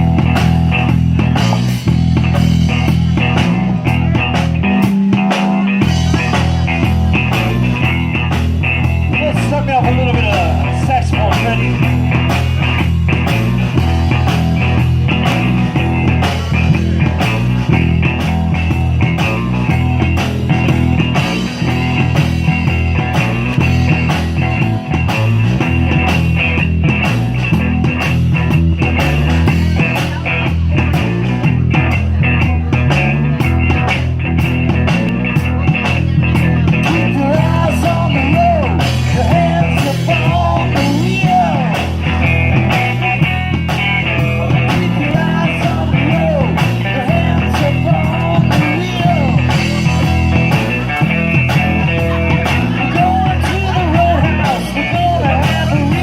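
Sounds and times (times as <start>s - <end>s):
bass line: 0.0s - 56.0s
drums keeping a beat: 0.0s - 56.0s
guitar: 0.0s - 56.0s
lead melody with bending notes: 0.0s - 56.0s.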